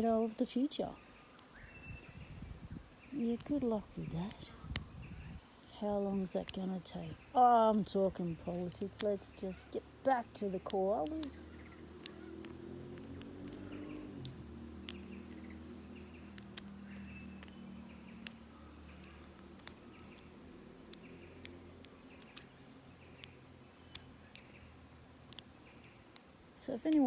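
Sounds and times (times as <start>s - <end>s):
faint bird chirps: 0.0s - 26.8s
sharp little clicks: 0.0s - 27.0s
bees buzzing: 5.6s - 24.5s.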